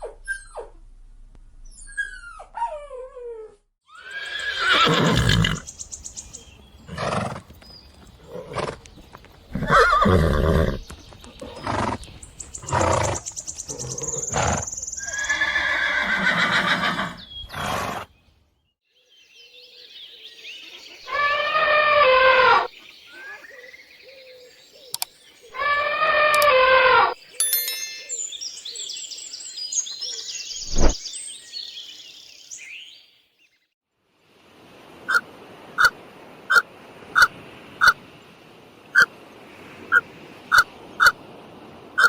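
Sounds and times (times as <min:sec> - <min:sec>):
birds chirping faintly: 0:04.2 - 0:21.2, 0:27.1 - 0:33.7
animal calling: 0:20.7 - 0:23.4.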